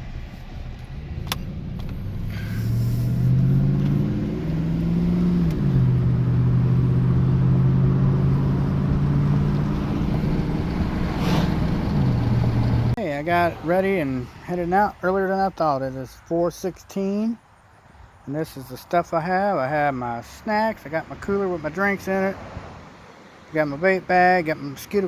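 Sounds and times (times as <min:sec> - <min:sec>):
car engine accelerating: 0:00.0 - 0:13.8.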